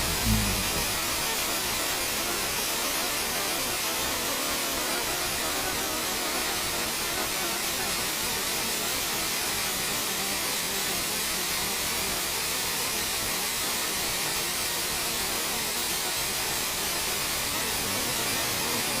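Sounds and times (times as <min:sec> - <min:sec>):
rushing hiss: 0:00.0 - 0:03.8, 0:15.0 - 0:19.0.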